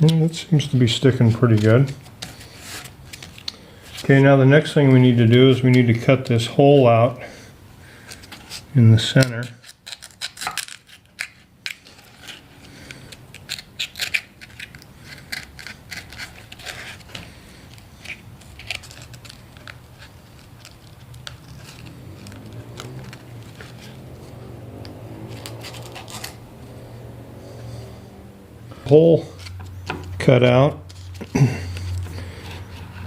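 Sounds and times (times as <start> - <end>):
scraping crunching cuts: 8.0 - 28.0.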